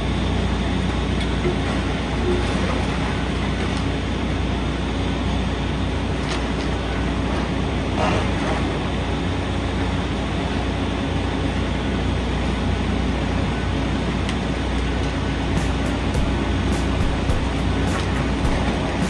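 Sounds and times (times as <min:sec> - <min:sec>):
machinery clatter: 0:15.6 - 0:19.0.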